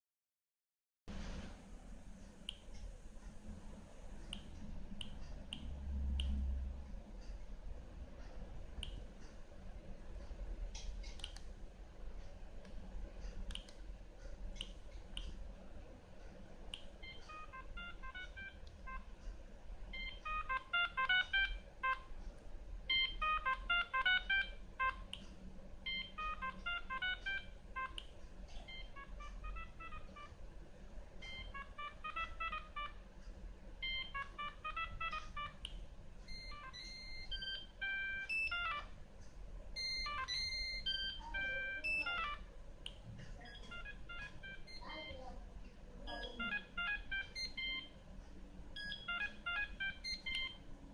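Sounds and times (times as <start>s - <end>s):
phone ringtone melody: 17.0s - 19.0s, 19.9s - 22.1s, 22.9s - 25.1s, 25.8s - 28.0s, 28.7s - 30.4s, 31.2s - 33.0s, 33.8s - 35.6s, 36.3s - 39.0s, 39.8s - 42.4s, 43.5s - 45.0s, 46.1s - 47.9s, 48.8s - 50.6s
ringtone beeping tones: 17.0s - 19.1s, 19.9s - 22.2s, 22.9s - 25.2s, 25.8s - 28.0s, 28.6s - 30.4s, 31.2s - 33.0s, 33.8s - 35.7s, 36.3s - 39.0s, 39.8s - 42.4s, 43.4s - 45.2s, 46.1s - 47.9s, 48.8s - 50.7s.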